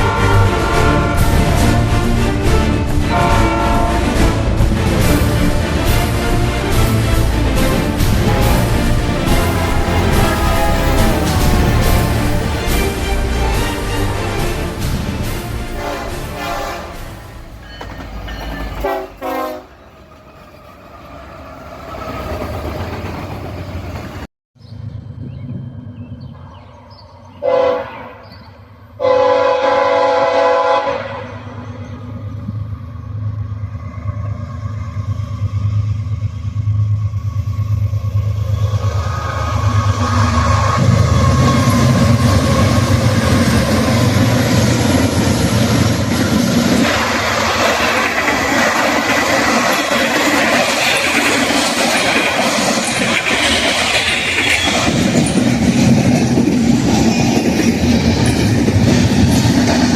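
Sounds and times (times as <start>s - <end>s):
locomotive horn blasts: 0.0s - 2.4s, 3.0s - 5.3s, 8.0s - 17.4s, 18.8s - 19.8s, 27.4s - 28.2s, 29.0s - 31.6s
train rolling past: 0.0s - 59.9s.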